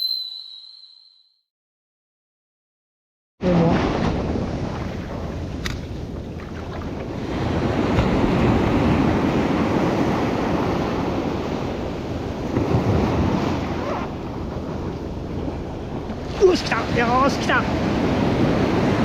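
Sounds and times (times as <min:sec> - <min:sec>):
surf washing onto beach: 0:03.5 - 0:19.0
wind buffeting microphone: 0:03.9 - 0:19.0.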